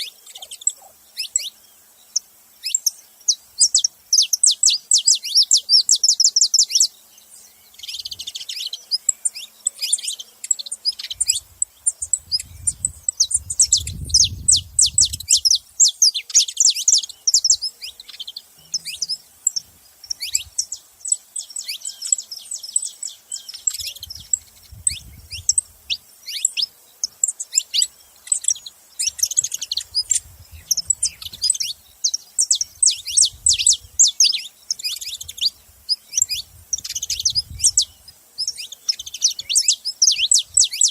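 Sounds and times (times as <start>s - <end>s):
finches chirping and singing: 0.0s - 40.9s.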